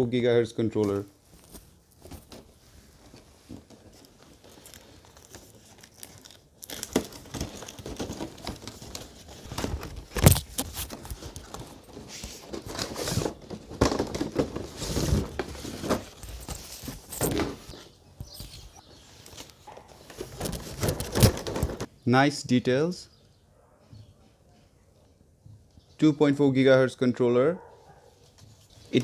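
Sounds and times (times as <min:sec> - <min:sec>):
plastic packaging crinkling: 0:01.3 - 0:21.9.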